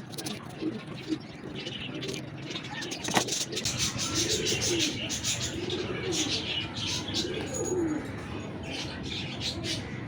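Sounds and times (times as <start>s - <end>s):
pigeon cooing: 0.0s - 8.3s.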